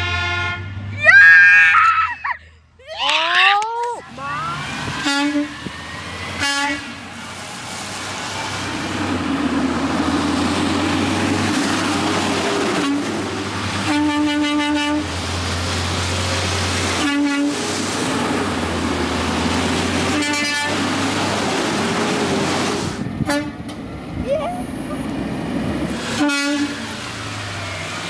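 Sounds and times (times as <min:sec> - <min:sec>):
truck horn honking: 0:00.0 - 0:00.9, 0:04.3 - 0:05.7, 0:06.4 - 0:07.0, 0:13.8 - 0:15.2, 0:17.0 - 0:17.7, 0:20.0 - 0:20.9, 0:23.2 - 0:23.6, 0:26.1 - 0:26.9.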